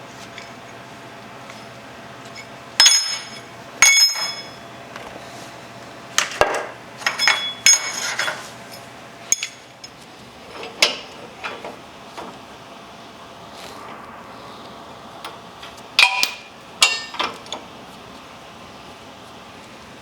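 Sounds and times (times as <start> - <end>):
tools clinking on metal: 2.3 - 4.6, 7.0 - 10.0, 16.0 - 17.6.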